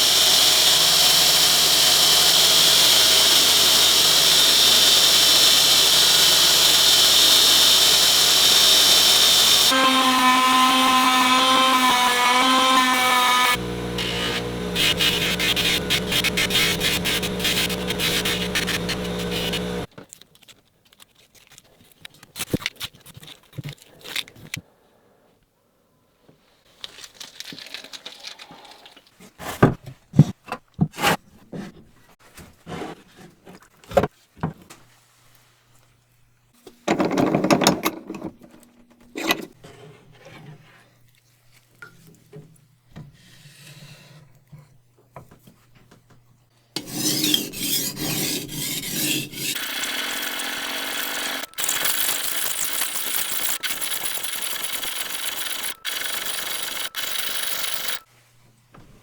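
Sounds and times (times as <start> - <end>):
filing-like rubbing: 14.0 - 19.9, 46.8 - 52.2.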